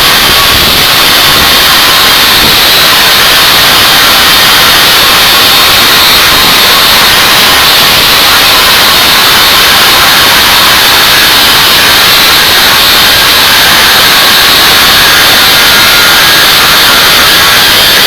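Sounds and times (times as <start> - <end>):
angle grinder cutting metal: 0.0 - 15.3.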